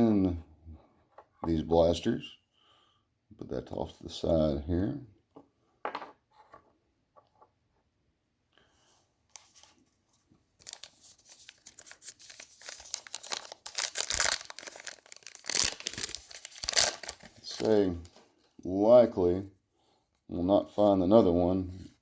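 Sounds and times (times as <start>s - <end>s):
wrapper tearing and crinkling: 10.6s - 17.8s.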